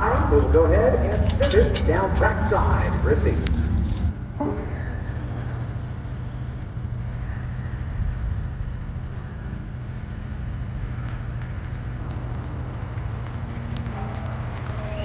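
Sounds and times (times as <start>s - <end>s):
low engine drone: 0.0s - 15.0s
sharp clicks: 11.0s - 14.7s.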